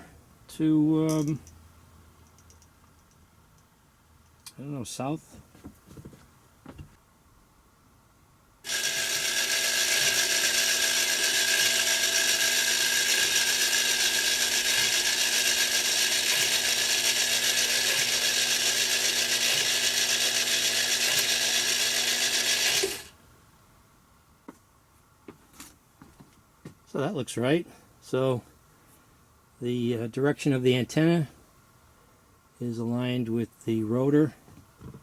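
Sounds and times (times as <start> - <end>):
antenna rotor motor running: 8.6 - 23.1.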